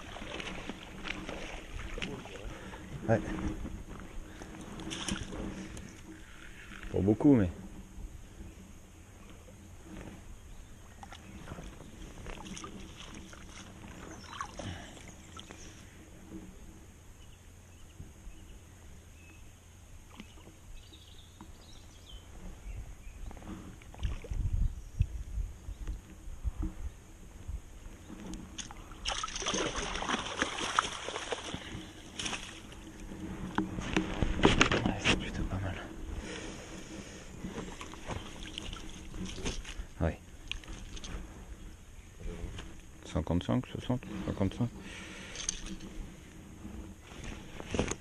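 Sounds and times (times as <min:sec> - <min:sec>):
small water splashes: 0:00.0 - 0:02.9, 0:12.2 - 0:15.6, 0:23.8 - 0:24.4, 0:28.6 - 0:32.8
water splashing and sloshing: 0:00.0 - 0:07.8, 0:09.2 - 0:16.5, 0:23.3 - 0:24.5, 0:28.0 - 0:41.6.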